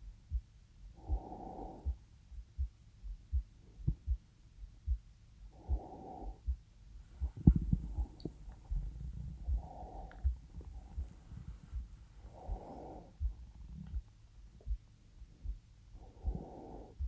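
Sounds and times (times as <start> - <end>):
heartbeat thumps: 0.0 - 6.6, 7.2 - 17.0
slow breaths: 1.0 - 2.0, 5.5 - 17.0.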